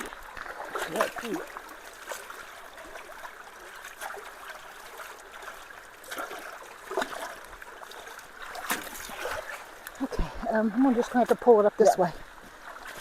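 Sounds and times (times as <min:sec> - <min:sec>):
creek water trickling: 0:00.0 - 0:13.0
water splashes: 0:00.0 - 0:13.0.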